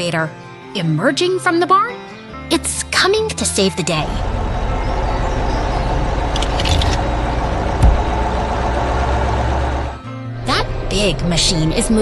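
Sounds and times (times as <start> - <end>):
excavator engine running: 4.0 - 12.0
low thud: 7.8 - 8.2.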